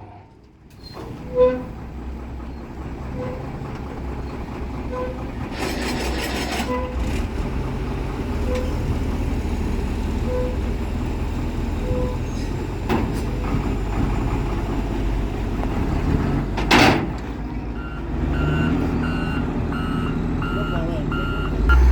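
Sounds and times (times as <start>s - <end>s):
truck engine running: 0.4s - 21.9s
reversing beeper: 17.8s - 21.9s.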